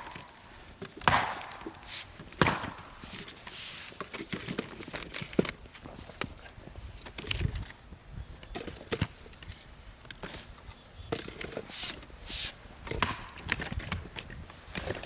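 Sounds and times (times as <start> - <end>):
wood being handled: 0.0 - 7.8, 8.4 - 15.0
firewood being struck: 1.0 - 3.2, 13.0 - 13.6.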